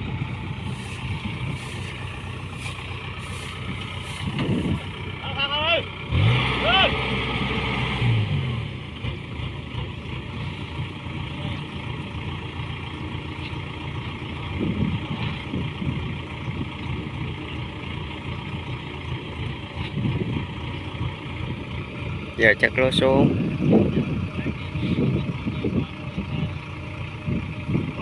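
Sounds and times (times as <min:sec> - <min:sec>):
farm machinery engine running: 0:00.0 - 0:28.0.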